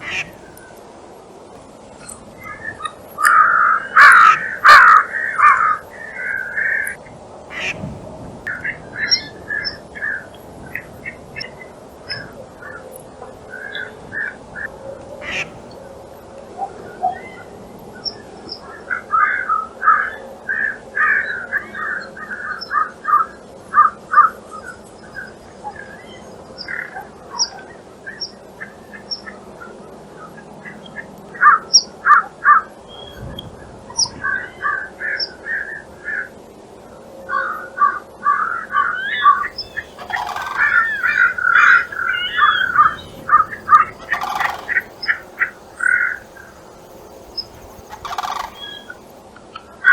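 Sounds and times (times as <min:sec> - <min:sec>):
birds calling in quick runs: 0:04.0 - 0:05.0, 0:15.2 - 0:15.8, 0:39.4 - 0:49.2
thin high bird chirps: 0:39.4 - 0:49.2.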